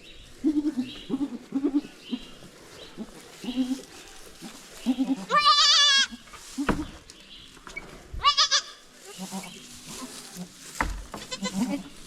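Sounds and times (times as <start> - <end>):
goat bleating: 0.4 - 2.3, 3.0 - 3.9, 4.8 - 6.7, 8.2 - 9.5, 11.2 - 12.0.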